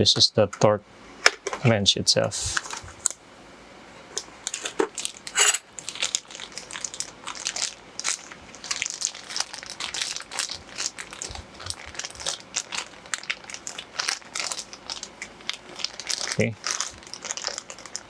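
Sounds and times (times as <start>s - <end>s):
plastic packaging crinkling: 4.2s - 18.0s.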